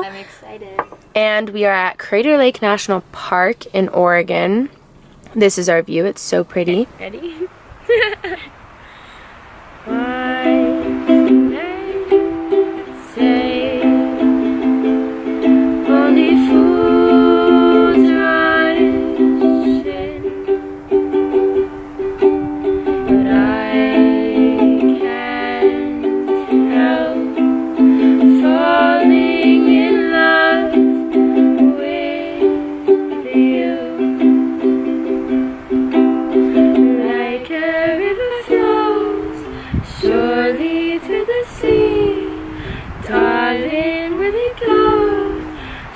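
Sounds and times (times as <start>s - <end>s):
upbeat ukulele tune: 9.9s - 45.8s.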